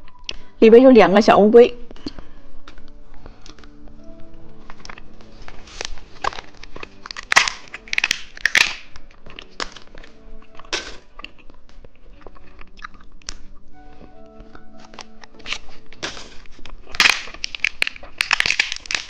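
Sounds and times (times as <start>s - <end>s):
soft background music: 0.0s - 19.0s
plastic packaging crinkling: 4.7s - 11.4s, 14.7s - 19.0s.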